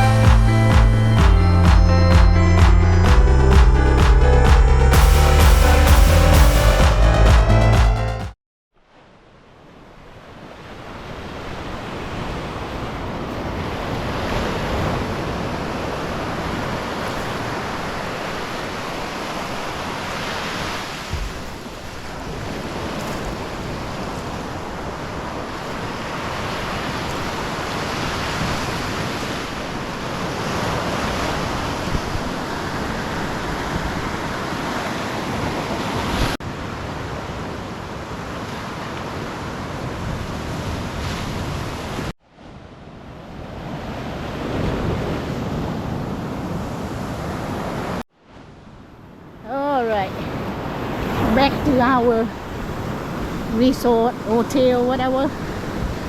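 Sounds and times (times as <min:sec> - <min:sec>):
sea waves breaking on beach: 0:09.0 - 0:56.0
wind gusting on microphone: 0:10.9 - 0:42.1, 0:49.6 - 0:56.0.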